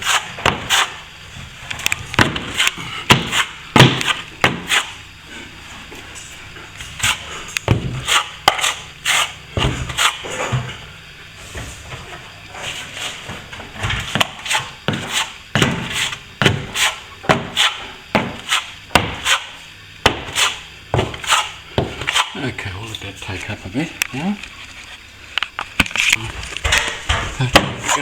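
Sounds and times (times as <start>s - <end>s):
plastering tool scraping plaster: 0.0s - 1.0s, 2.2s - 5.0s, 6.8s - 10.6s, 12.5s - 22.4s, 26.9s - 28.0s.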